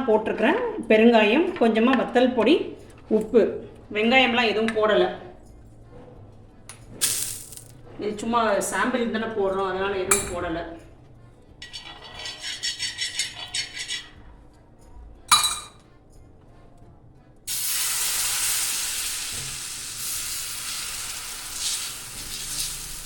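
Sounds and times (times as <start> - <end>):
batter sizzling on hot pan: 7.0 - 7.7, 17.5 - 23.0
ladle clinking in steel bowl: 10.1 - 10.4, 11.6 - 14.1, 15.3 - 15.8.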